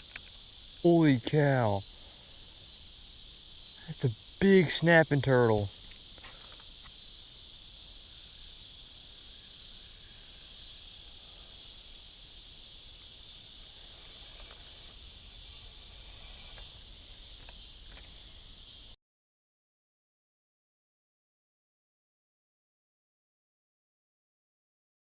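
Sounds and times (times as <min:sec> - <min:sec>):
high-pitched insect chorus: 0:00.0 - 0:19.0.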